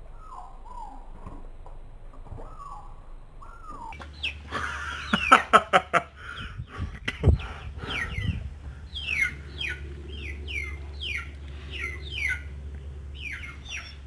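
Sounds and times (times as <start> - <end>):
bird calling in high notes: 0.0 - 1.1, 2.4 - 5.6, 7.8 - 14.0
low steady hum: 0.0 - 14.0.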